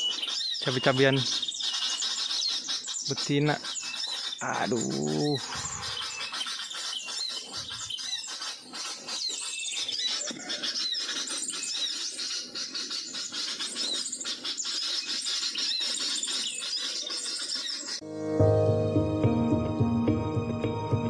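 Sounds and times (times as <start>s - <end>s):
small birds chirping: 0.0s - 18.0s.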